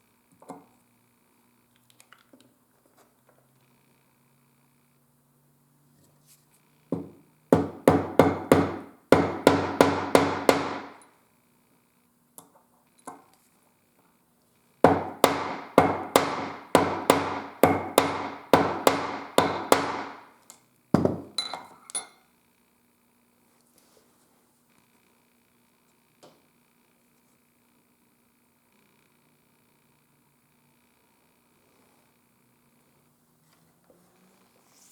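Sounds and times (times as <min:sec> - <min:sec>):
mallet striking leather tool: 0:07.0 - 0:11.0, 0:14.8 - 0:20.3, 0:21.0 - 0:21.4.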